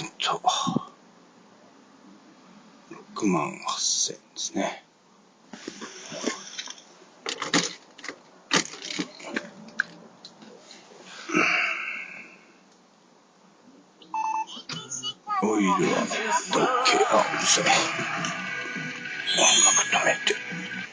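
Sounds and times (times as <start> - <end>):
handling clicks and knocks: 6.6 - 10.6.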